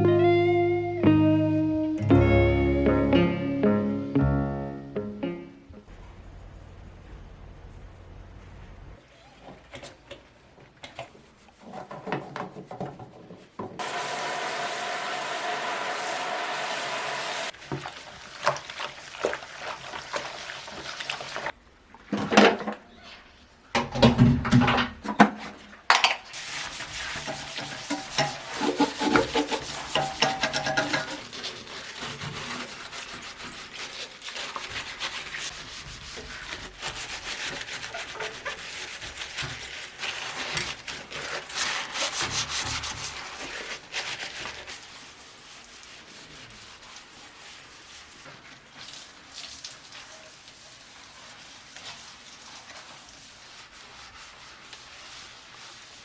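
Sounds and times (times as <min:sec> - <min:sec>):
scrubbing bathroom surfaces: 0:10.7 - 0:22.4, 0:26.4 - 0:56.0.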